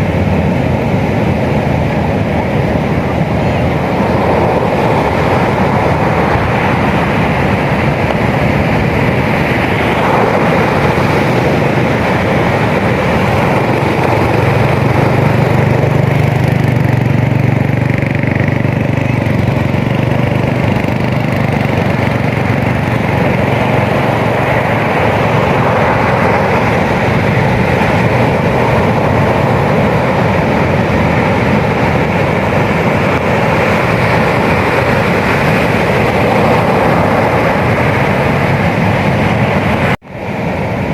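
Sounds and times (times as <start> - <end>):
ocean surf roaring: 0.0 - 40.9.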